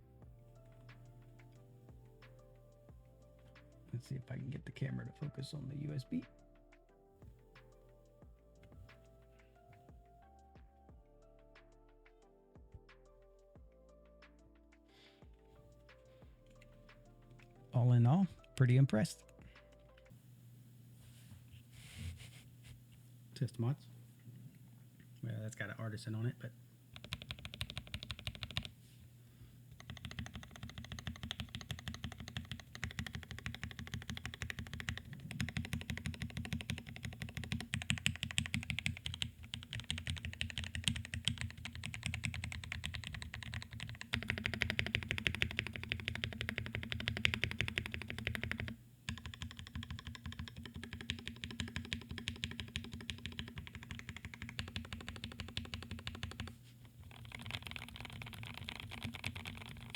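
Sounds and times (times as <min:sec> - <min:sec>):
fast mechanical keyboard typing: 0:27.0 - 0:28.8, 0:29.7 - 0:59.9.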